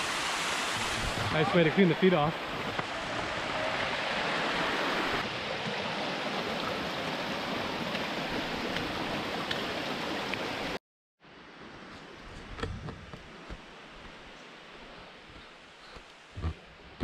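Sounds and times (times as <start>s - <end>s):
waterfall rushing: 0.0s - 10.8s.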